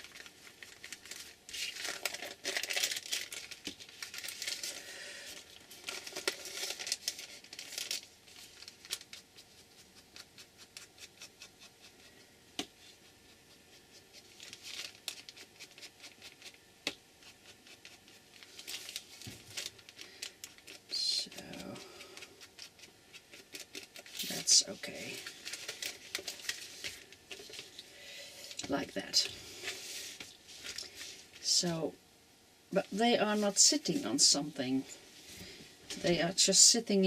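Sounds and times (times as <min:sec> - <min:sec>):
paper rustling: 0:00.0 - 0:11.0, 0:13.9 - 0:16.6, 0:17.6 - 0:27.8, 0:28.6 - 0:31.4.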